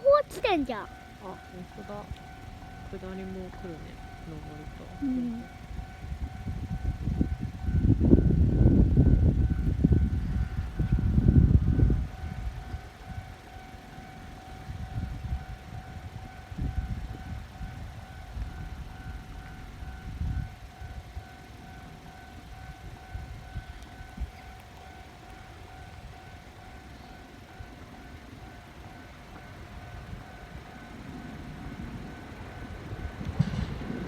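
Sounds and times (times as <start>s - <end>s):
level crossing bell clanging: 0.0s - 8.0s.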